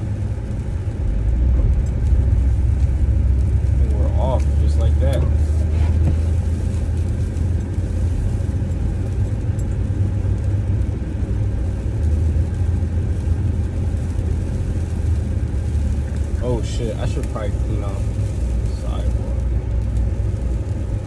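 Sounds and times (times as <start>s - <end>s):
car engine and road rumble: 0.0s - 21.0s.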